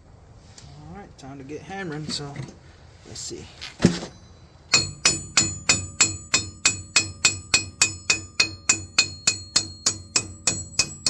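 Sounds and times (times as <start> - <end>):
hammer striking metal stud: 3.9 - 11.0.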